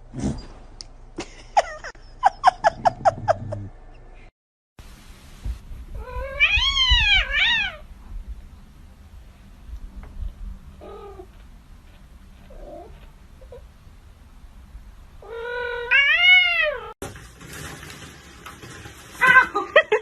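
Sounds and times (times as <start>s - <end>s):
cat long meow: 6.0s - 7.8s, 15.2s - 16.9s.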